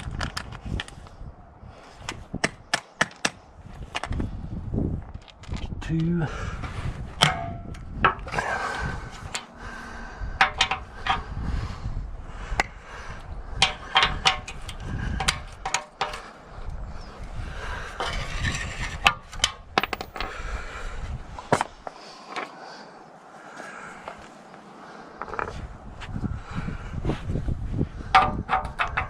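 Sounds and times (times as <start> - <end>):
metal clanks and knocks: 7.2 - 8.3, 10.4 - 11.2, 13.6 - 16.4, 28.1 - 29.0.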